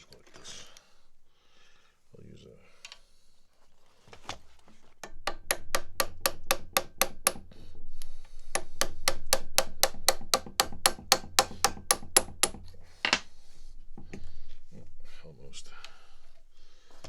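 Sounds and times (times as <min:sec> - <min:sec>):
hammer tapping on metal: 0:05.0 - 0:07.6, 0:08.4 - 0:13.3.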